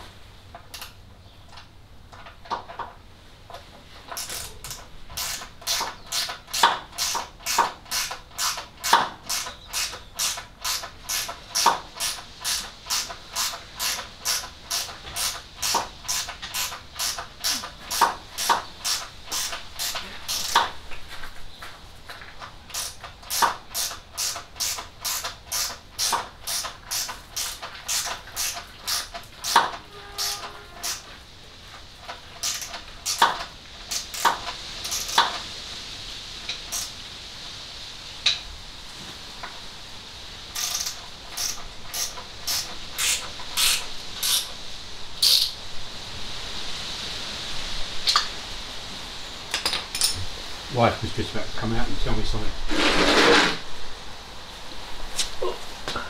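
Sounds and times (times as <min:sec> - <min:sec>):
socket ratchet clicking: 0:04.2 - 0:20.7, 0:22.7 - 0:31.1, 0:32.4 - 0:35.3, 0:40.6 - 0:44.5, 0:45.2 - 0:45.6.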